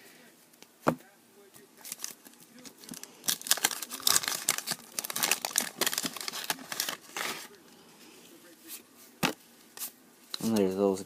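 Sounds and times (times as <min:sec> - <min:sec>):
paper wrapper torn and crinkled: 0:01.8 - 0:07.6.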